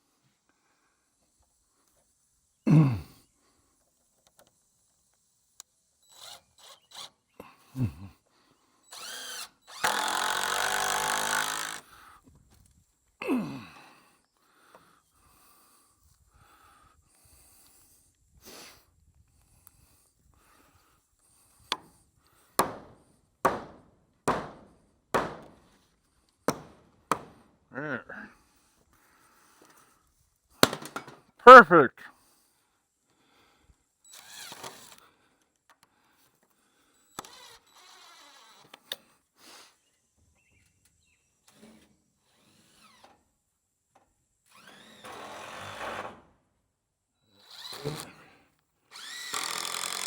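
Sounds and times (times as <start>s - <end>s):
power drill running: 6.0s - 7.2s, 8.9s - 11.9s, 34.1s - 35.0s, 37.0s - 38.7s, 44.4s - 46.2s, 47.4s - 48.2s, 48.9s - 50.0s
hammer strikes: 22.6s - 22.9s, 23.5s - 25.6s, 26.5s - 27.4s
heavy knocks on wood: 23.5s - 25.6s, 26.5s - 27.4s.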